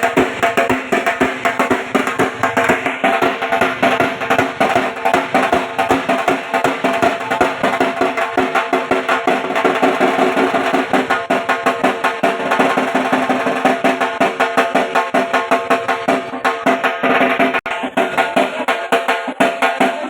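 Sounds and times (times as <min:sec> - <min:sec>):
barrel drum beaten with sticks: 0:00.0 - 0:20.0.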